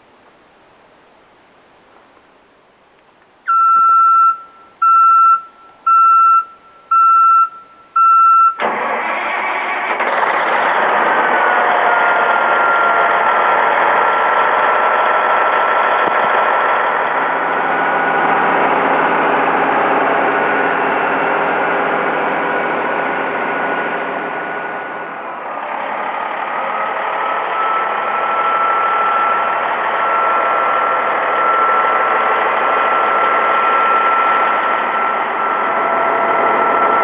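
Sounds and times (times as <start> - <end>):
warning alarm beeps: 3.5 - 8.6
diesel engine running: 8.6 - 37.0.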